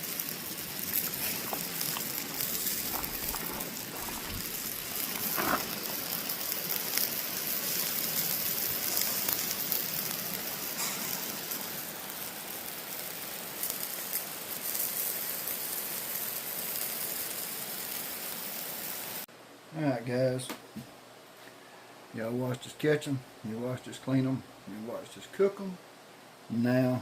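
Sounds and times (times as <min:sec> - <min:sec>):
butter and fish sizzling on a grill: 0:00.0 - 0:19.3.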